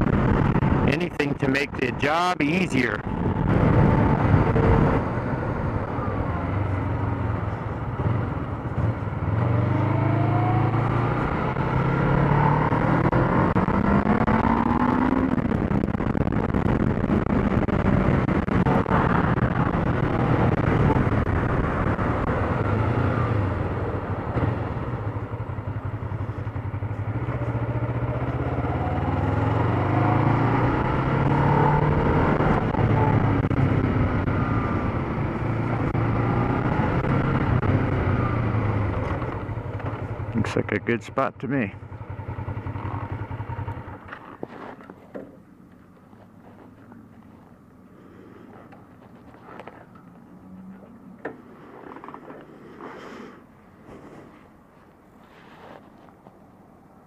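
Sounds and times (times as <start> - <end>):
motorcycle engine revving: 0.0 - 45.3.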